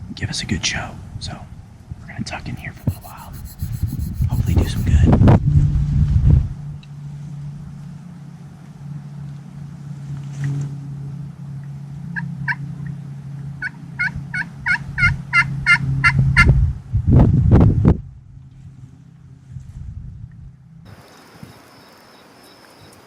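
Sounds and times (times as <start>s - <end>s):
steady low hum: 2.6s - 5.9s.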